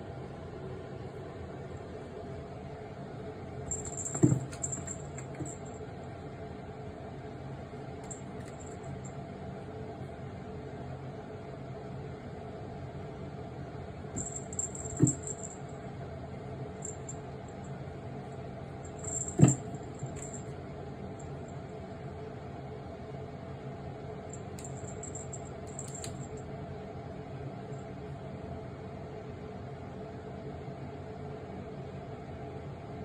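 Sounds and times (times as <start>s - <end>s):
appliance hum: 0.0s - 33.0s
thumps against refrigerator door: 4.1s - 4.8s, 19.2s - 20.3s.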